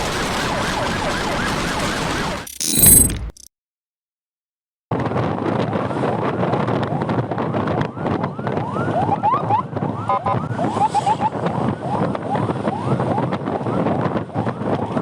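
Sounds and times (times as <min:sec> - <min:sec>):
siren chirps: 0:00.8 - 0:03.5.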